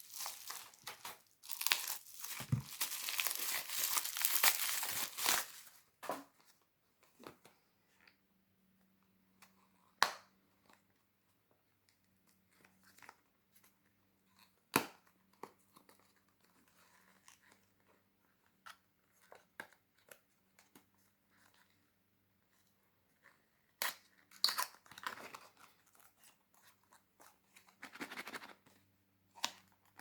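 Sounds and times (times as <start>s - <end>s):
packaging rustling and crinkling: 0.0s - 5.8s.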